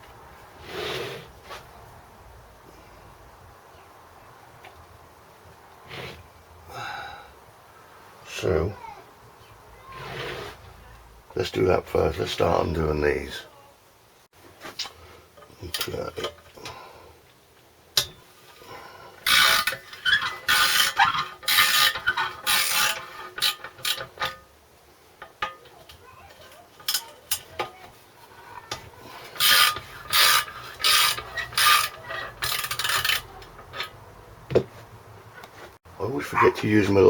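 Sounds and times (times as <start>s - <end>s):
ratchet wrench clicking: 29.4s - 33.9s.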